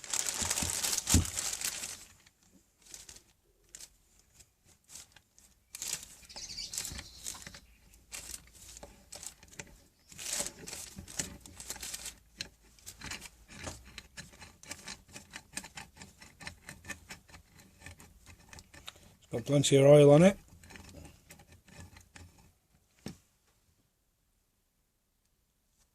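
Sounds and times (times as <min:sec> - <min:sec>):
wrapping rustling: 0:00.0 - 0:15.0
small metal clicks and knocks: 0:05.8 - 0:19.1, 0:20.4 - 0:22.6.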